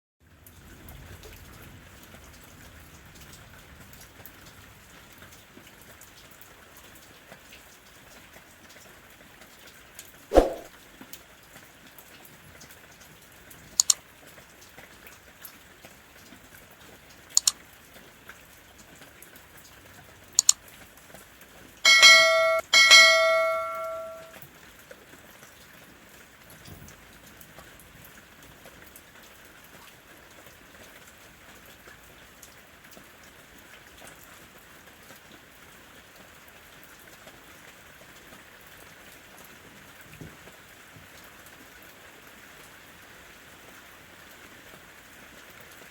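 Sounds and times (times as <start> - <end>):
steady rain: 0.2 - 22.1, 22.7 - 45.9
sharp drip ticks: 13.8 - 14.0, 17.3 - 17.6, 20.4 - 20.7
bell-like ringing strikes: 21.9 - 24.3.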